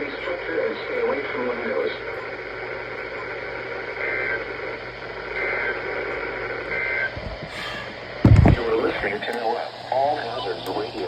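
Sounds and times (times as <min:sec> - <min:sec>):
radio hiss: 0:00.0 - 0:11.0
buzzy data bursts: 0:08.2 - 0:09.8.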